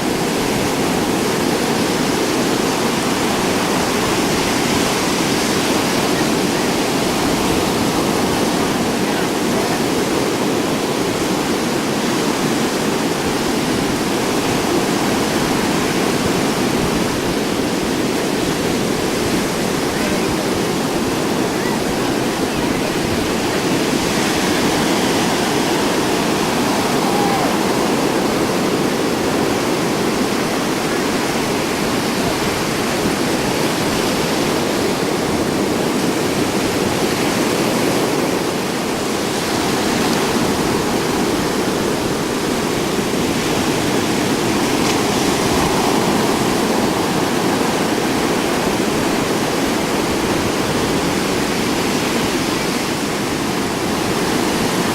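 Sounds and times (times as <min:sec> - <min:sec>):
surf breaking: 0:00.0 - 0:54.9
wind: 0:00.0 - 0:54.9.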